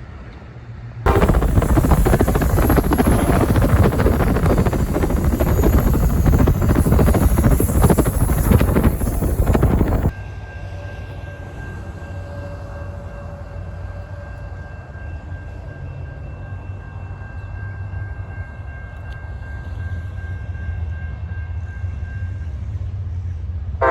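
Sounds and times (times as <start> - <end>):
steady low rumble: 1.1 - 10.1
train rushing past: 1.1 - 10.2.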